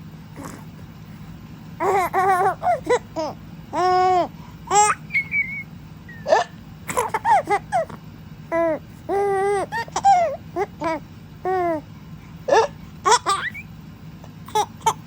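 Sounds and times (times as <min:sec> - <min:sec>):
baby laughing: 0:01.8 - 0:11.8, 0:12.5 - 0:13.6, 0:14.4 - 0:15.0.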